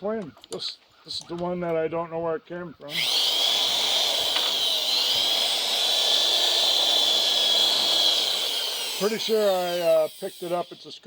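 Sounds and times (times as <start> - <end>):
drill spinning wire brush: 2.9 - 11.0.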